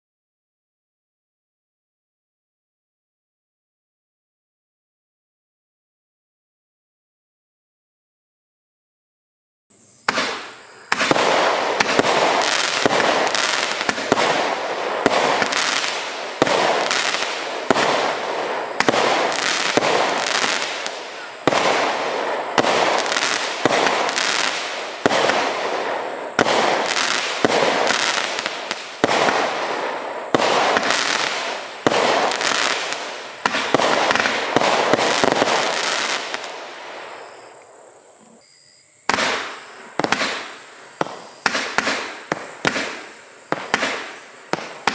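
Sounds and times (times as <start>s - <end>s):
fireworks cake firing bangs: 10.0s - 37.5s, 39.0s - 44.9s.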